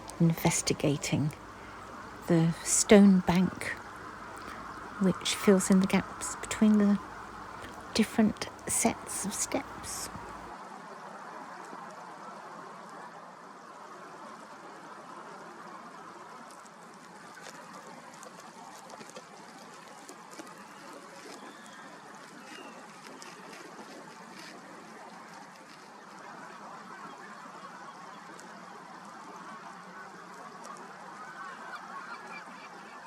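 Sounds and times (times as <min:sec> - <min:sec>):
faint bird calls: 0:00.0 - 0:10.5
water trickling and lapping: 0:00.0 - 0:10.5, 0:17.0 - 0:32.8.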